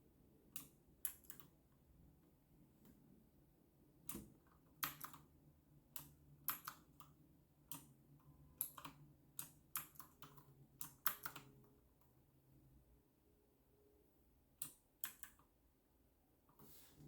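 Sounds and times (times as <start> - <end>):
mechanical keyboard clicks: 4.1 - 5.2, 8.6 - 11.5.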